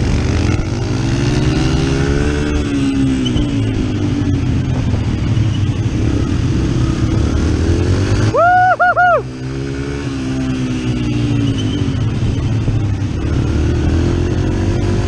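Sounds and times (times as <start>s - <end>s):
wind noise: 0.0s - 8.4s
rider shouting woo: 8.2s - 9.4s.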